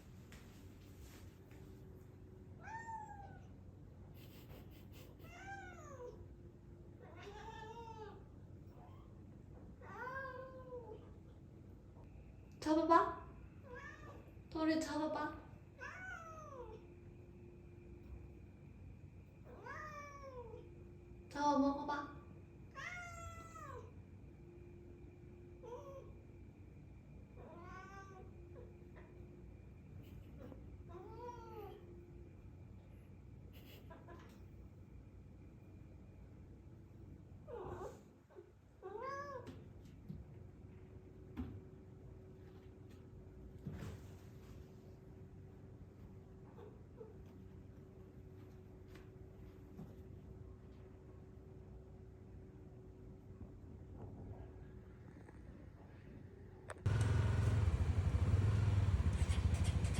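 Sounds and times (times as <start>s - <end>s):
cat meowing: 22.7s - 23.9s.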